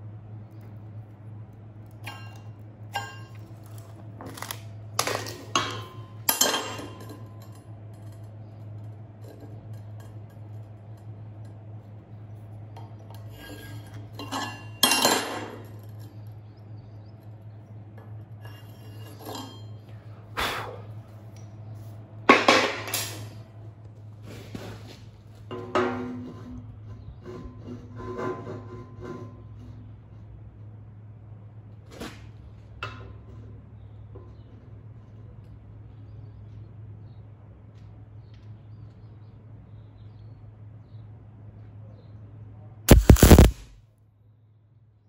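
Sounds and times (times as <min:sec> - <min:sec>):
steady low hum: 0:00.0 - 0:32.8, 0:42.9 - 0:43.8
metal parts clanking on steel: 0:05.1 - 0:08.2.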